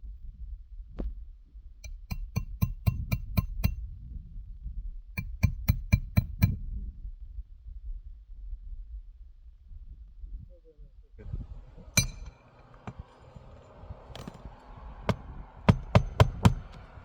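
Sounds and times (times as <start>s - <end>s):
hammer striking roofing nails: 1.9s - 3.8s, 5.2s - 6.6s, 11.5s - 17.0s.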